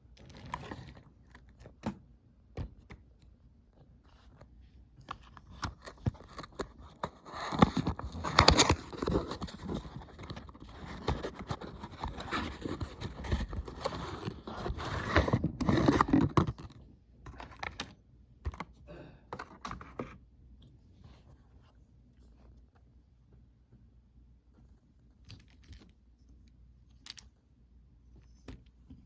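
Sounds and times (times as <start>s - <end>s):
packaging scraping and clicking: 5.2s - 17.9s.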